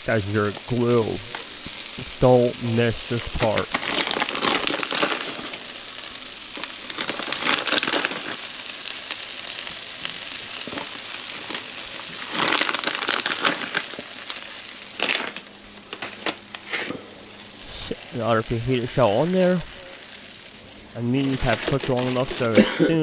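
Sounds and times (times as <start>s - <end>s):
food sizzling in a frying pan: 0.0s - 23.0s.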